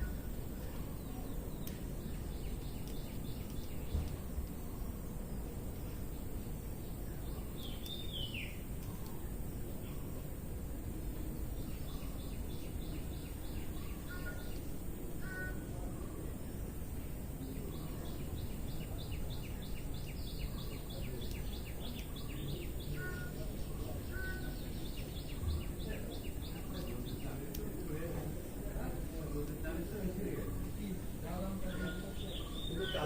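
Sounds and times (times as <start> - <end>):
birds chipping rapidly: 0.0 - 33.0
low background noise: 0.0 - 33.0
bird whistled notes: 22.0 - 23.5.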